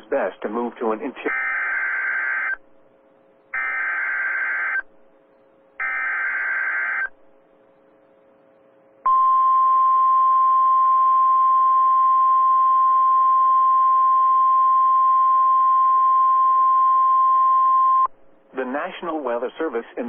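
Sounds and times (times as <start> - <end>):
loud steady alarm beep: 1.3 - 2.6, 3.6 - 4.9, 5.8 - 7.1, 9.1 - 18.1.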